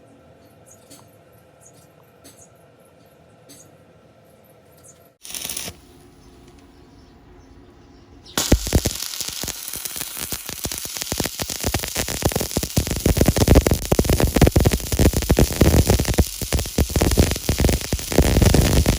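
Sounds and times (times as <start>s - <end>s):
welding arc crackling: 5.2s - 6.0s, 8.4s - 18.9s
welding arc hiss: 5.2s - 6.0s, 8.4s - 18.9s.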